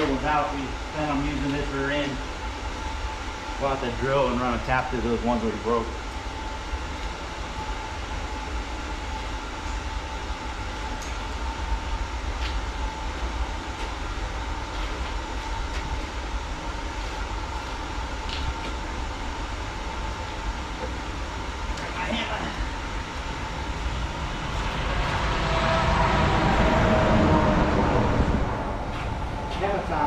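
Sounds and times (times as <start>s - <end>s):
machine hum with whine: 0.0s - 30.0s.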